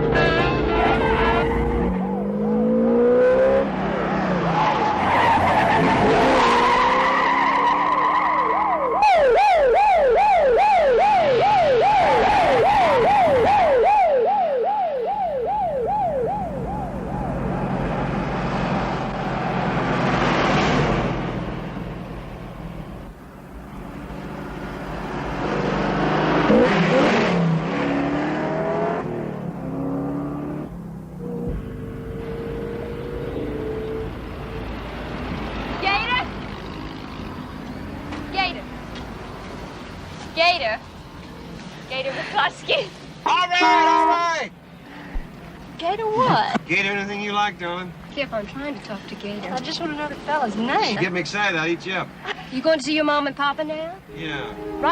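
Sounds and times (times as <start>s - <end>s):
siren wailing: 0.2s - 2.9s, 4.6s - 18.1s, 54.1s - 54.9s
car engine revving hard: 23.9s - 34.4s.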